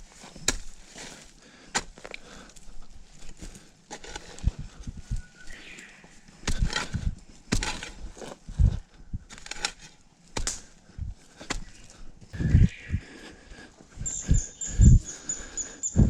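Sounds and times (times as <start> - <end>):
garden tool chopping soil: 0.4 - 2.2, 3.9 - 4.6, 6.4 - 8.3, 9.3 - 10.7.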